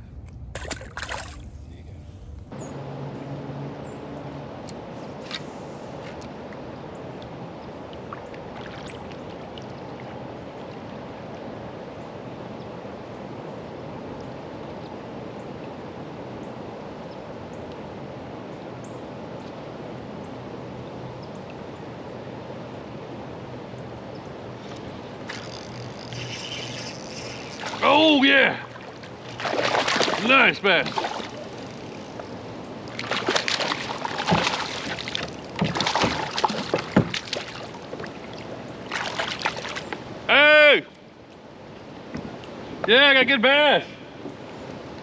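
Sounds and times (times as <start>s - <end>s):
flowing creek water: 0.0s - 2.6s, 5.0s - 12.6s, 19.7s - 42.9s.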